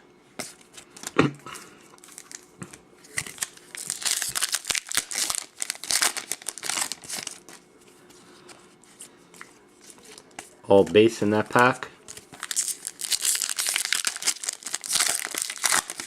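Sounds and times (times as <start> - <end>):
foil wrapper tearing and crinkling: 2.0 - 2.4, 3.2 - 7.6, 12.1 - 16.0.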